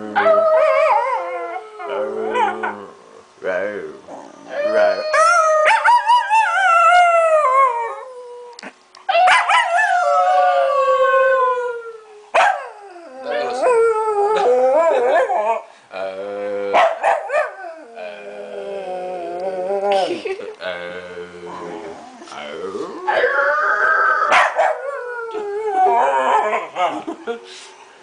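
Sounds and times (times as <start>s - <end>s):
small dog howling: 4.4s - 8.2s, 12.6s - 15.4s, 23.0s - 26.7s.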